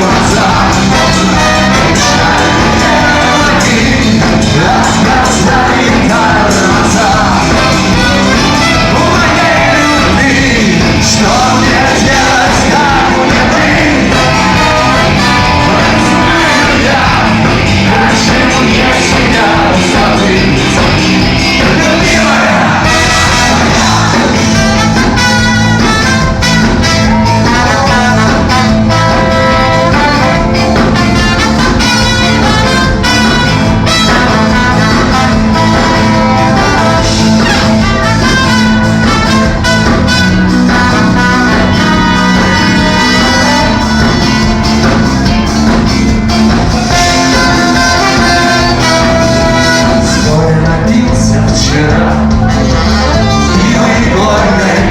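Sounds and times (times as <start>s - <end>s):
live rock band with vocals: 0.0s - 54.9s.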